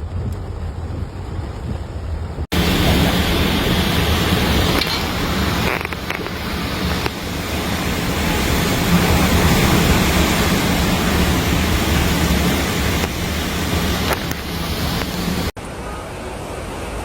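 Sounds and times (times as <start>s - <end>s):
deep low rumble: 0.0s - 15.6s
heavy water rushing: 0.0s - 17.0s
wind rushing: 2.4s - 15.6s.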